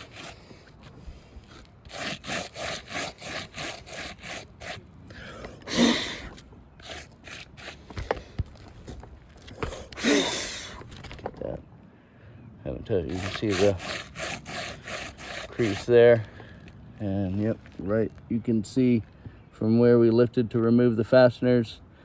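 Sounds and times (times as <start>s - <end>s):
hand scraping roof shingles: 0.0s - 11.4s, 13.1s - 16.6s
rush of blown air: 5.1s - 7.0s.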